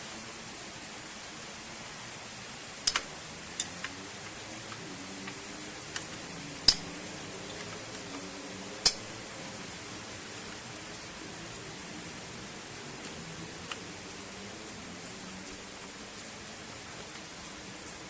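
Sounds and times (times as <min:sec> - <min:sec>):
steady hiss: 0:00.0 - 0:18.0
metal tools clicking and clinking: 0:02.9 - 0:03.7.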